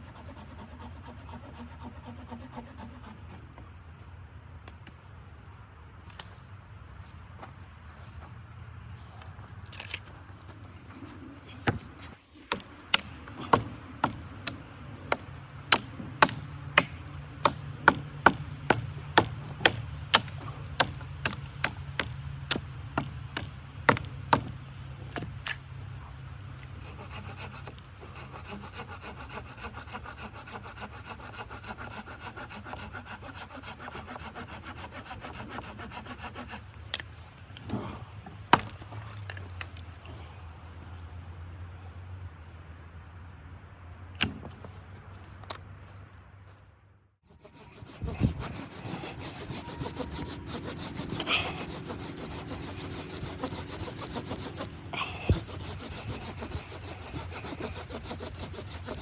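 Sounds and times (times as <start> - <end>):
hand saw cutting wood: 0.0 - 3.6, 12.5 - 22.6, 26.8 - 37.1, 47.2 - 59.0.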